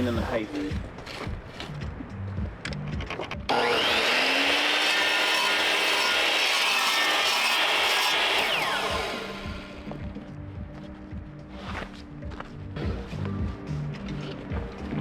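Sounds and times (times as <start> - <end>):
electric saw cutting wood: 3.5 - 10.0.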